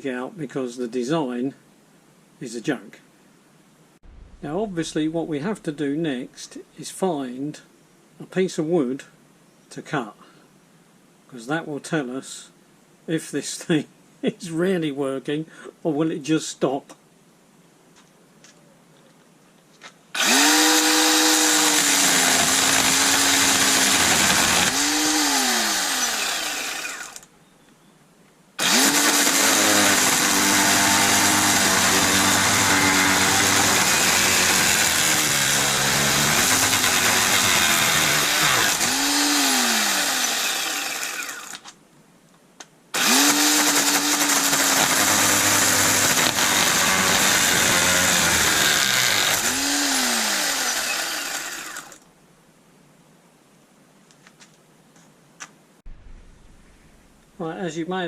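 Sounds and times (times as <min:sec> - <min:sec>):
cordless chainsaw cutting wood: 0:20.2 - 0:27.3, 0:28.6 - 0:41.6, 0:43.0 - 0:52.0.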